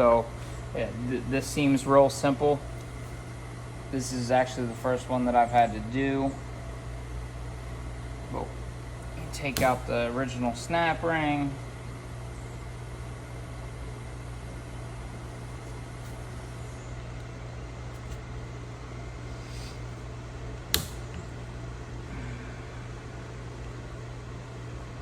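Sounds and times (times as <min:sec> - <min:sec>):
low machine hum: 0:00.0 - 0:25.0.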